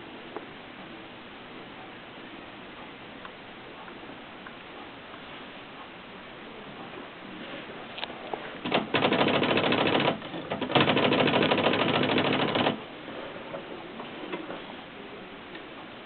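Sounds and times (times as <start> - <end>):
typewriter clicks: 8.6 - 12.8.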